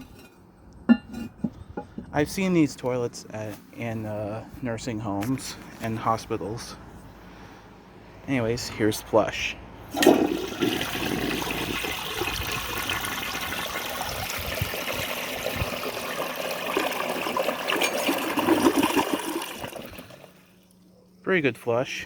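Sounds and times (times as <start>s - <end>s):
toilet flushing: 9.9s - 20.5s.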